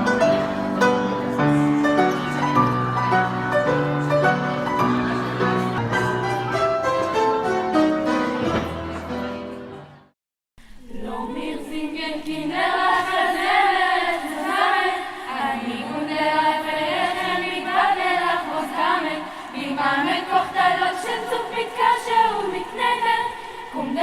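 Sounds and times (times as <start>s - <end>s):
instrumental music: 0.0s - 10.1s
youth choir singing: 10.7s - 24.0s.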